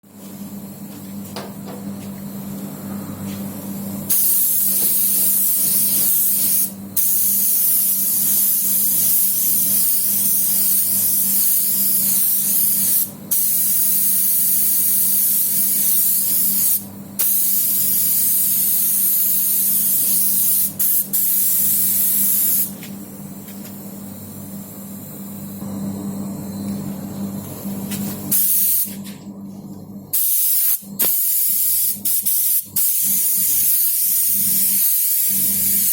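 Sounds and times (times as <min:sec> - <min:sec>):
steady low hum: 0:00.1 - 0:35.9
spray paint hissing: 0:04.1 - 0:22.8, 0:28.3 - 0:29.0, 0:30.2 - 0:35.9.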